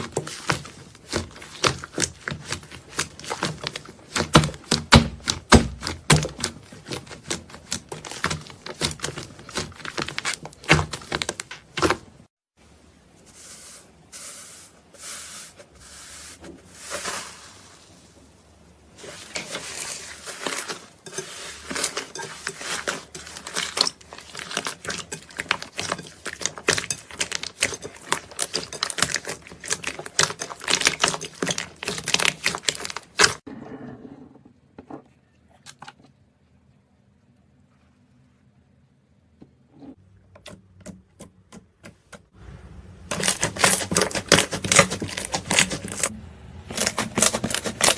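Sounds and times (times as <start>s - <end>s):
slime squishing: 0.0s - 12.3s, 18.9s - 33.4s, 43.0s - 46.1s, 46.7s - 47.9s.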